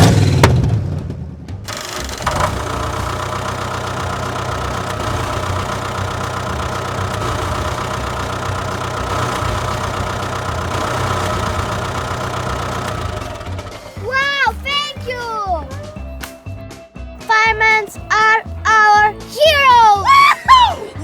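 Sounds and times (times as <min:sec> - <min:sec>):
motor starting click: 0:01.7 - 0:14.0
small motor running: 0:01.7 - 0:14.0.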